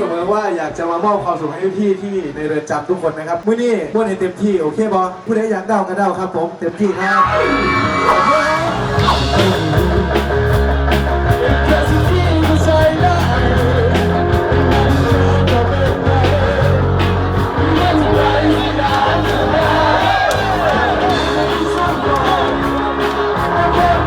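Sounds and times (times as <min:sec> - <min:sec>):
heavy bass line: 0:07.2 - 0:24.0
drum beat: 0:08.2 - 0:24.0
person singing: 0:11.3 - 0:24.0.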